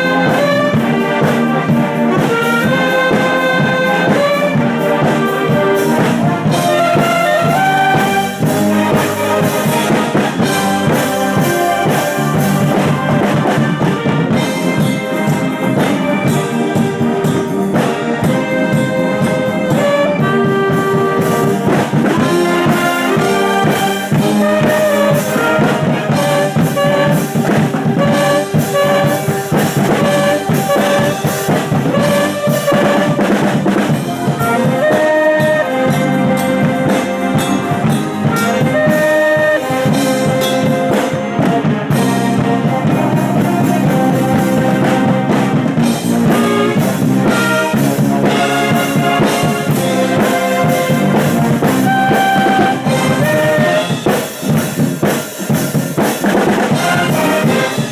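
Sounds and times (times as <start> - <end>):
brass section playing: 0.0 - 57.9
steady drum beat: 0.0 - 57.9.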